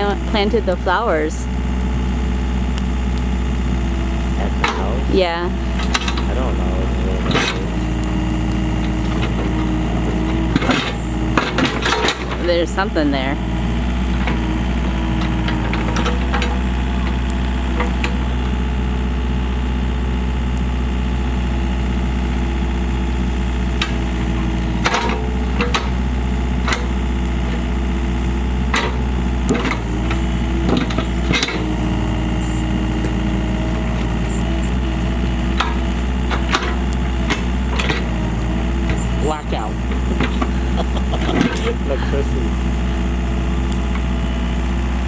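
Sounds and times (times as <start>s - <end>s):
excavator engine running: 0.0s - 45.0s
machine knocks and clanks: 5.7s - 8.1s, 8.7s - 12.9s, 13.8s - 18.5s, 23.8s - 41.9s.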